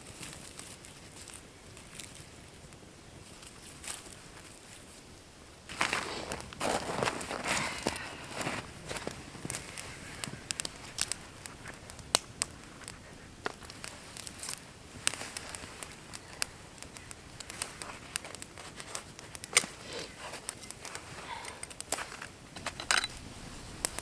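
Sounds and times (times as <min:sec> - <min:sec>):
campfire crackling: 0:00.0 - 0:24.0
sharp pops and snaps: 0:05.7 - 0:24.0.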